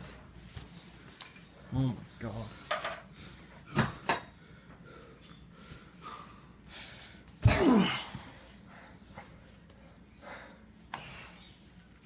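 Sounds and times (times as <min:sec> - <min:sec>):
short falling grunt: 0:07.4 - 0:08.1.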